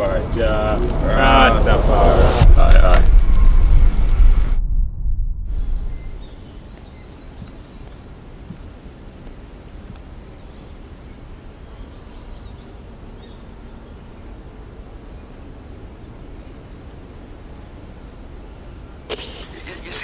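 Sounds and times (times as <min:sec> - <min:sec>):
faint high chirps and clicks: 0:06.0 - 0:10.1
low background noise: 0:06.2 - 0:20.0.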